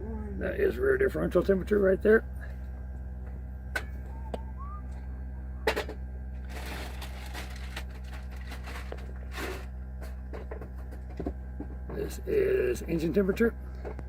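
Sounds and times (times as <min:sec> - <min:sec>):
steady low hum: 0:00.0 - 0:14.0
rustling: 0:06.4 - 0:09.5.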